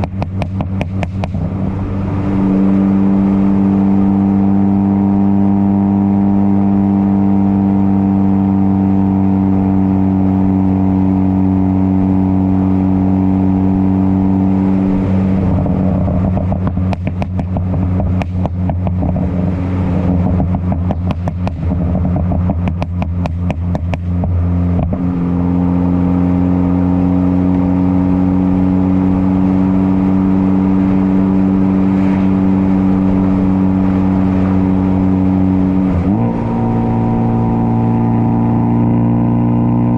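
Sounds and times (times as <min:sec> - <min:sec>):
exhaust crackles and pops: 0:00.0 - 0:02.0, 0:14.8 - 0:25.1
car exhaust droning: 0:00.0 - 0:39.9.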